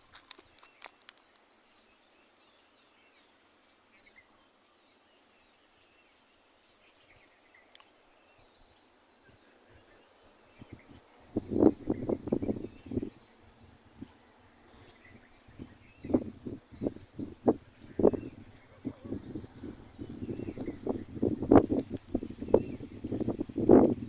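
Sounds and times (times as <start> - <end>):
insect chirping: 7.8 - 24.0.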